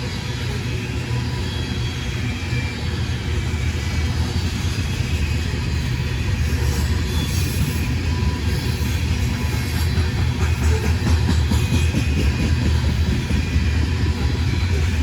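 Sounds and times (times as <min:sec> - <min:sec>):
train passing rumble: 0:00.0 - 0:15.0.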